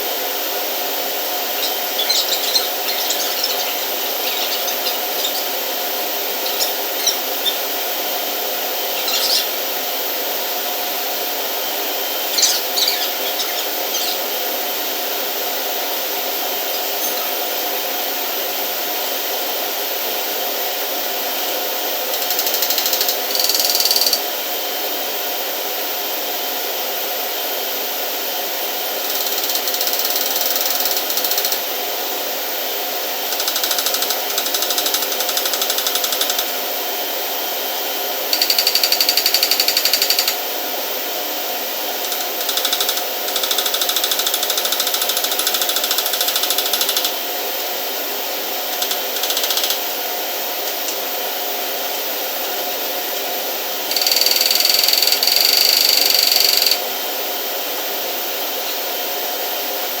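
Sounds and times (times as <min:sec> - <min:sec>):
steady machinery hum: 0:00.0 - 0:55.2.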